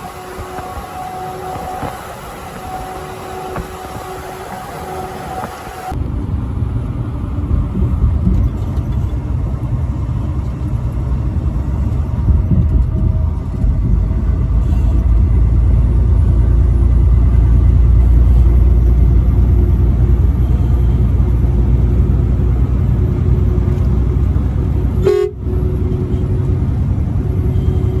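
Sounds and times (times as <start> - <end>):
truck horn: 0.0 - 6.0, 20.0 - 21.8, 24.9 - 28.0
truck rumbling on highway: 0.0 - 28.0.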